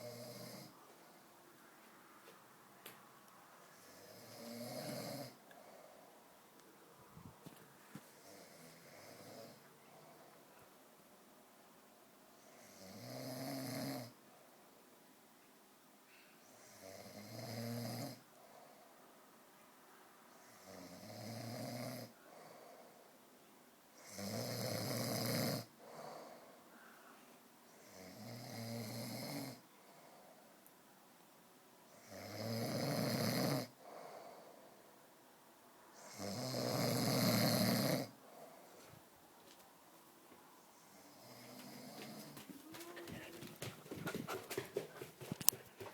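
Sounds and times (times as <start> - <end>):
quiet breaths: 0.0 - 45.9
man snoring loudly: 3.9 - 5.4, 12.7 - 14.1, 32.2 - 33.7, 36.1 - 38.1.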